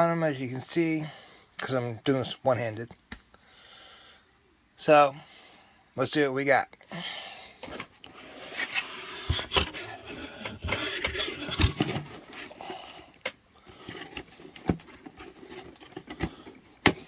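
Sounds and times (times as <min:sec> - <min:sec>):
cardboard scraping and rustling: 0:08.3 - 0:12.9, 0:13.7 - 0:17.0.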